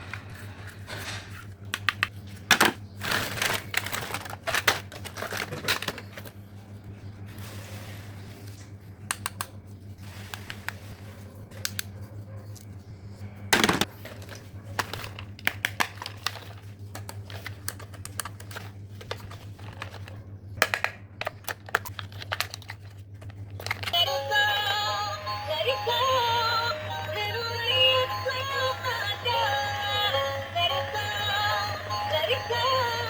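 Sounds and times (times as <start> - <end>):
steady low hum: 0.0 - 33.0
plastic toys clicking and knocking: 13.6 - 24.0.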